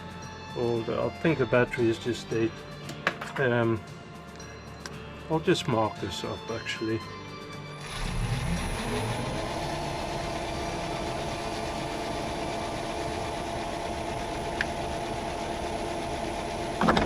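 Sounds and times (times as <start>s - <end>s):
lathe motor humming: 7.8s - 17.0s.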